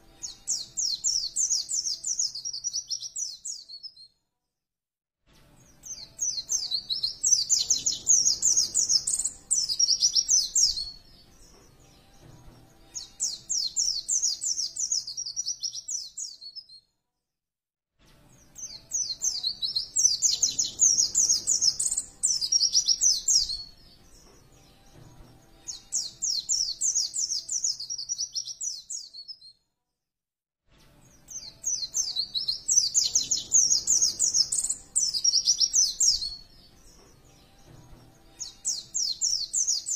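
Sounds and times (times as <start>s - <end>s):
bird chirping twitters: 0.2s - 4.0s, 5.8s - 11.9s, 13.0s - 16.7s, 18.6s - 24.9s, 25.7s - 29.4s, 31.3s - 37.4s, 38.4s - 39.9s.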